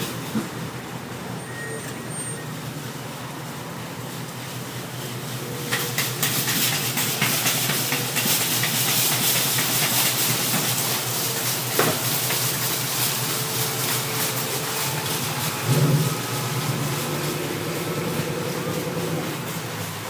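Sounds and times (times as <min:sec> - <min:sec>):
loud steady hiss: 0:00.0 - 0:20.0
rapid clicks and rattles: 0:05.7 - 0:20.0.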